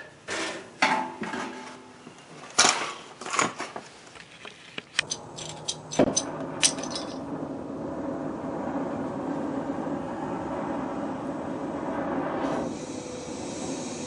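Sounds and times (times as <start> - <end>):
torch flame hissing: 7.2 - 14.0.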